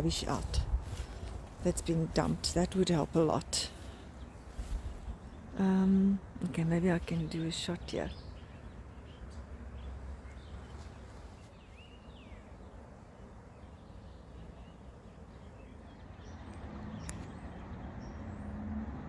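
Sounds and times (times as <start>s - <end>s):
bird chirps: 7.0s - 12.8s.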